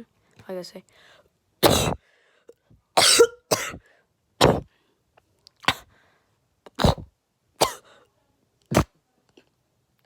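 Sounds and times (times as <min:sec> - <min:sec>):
person coughing: 0:01.6 - 0:02.0, 0:03.0 - 0:03.8.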